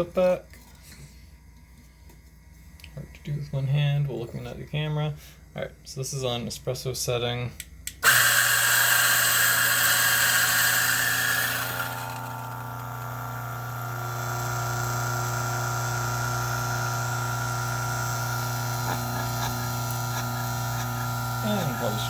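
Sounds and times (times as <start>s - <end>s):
coffee grinder grinding: 8.0s - 22.0s.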